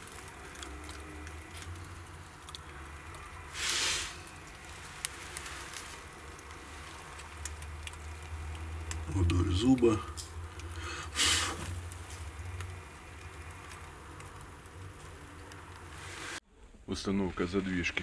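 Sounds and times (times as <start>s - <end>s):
wood fire crackling: 0.0s - 16.4s
low steady hum: 0.0s - 18.0s
short rushing hiss: 3.5s - 4.3s, 11.1s - 11.8s.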